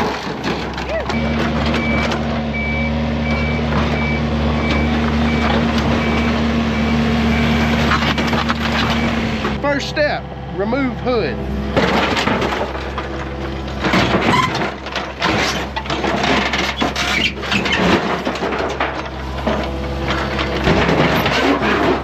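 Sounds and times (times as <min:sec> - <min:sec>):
sheet metal crunching and scraping: 0:00.0 - 0:02.3, 0:11.7 - 0:22.0
excavator engine running: 0:00.0 - 0:22.0.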